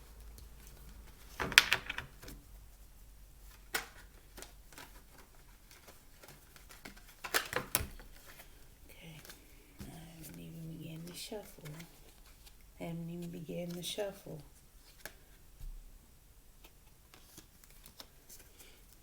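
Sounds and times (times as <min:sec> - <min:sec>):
cards riffling and clicking: 0:00.2 - 0:02.4, 0:03.4 - 0:10.4, 0:16.6 - 0:19.0.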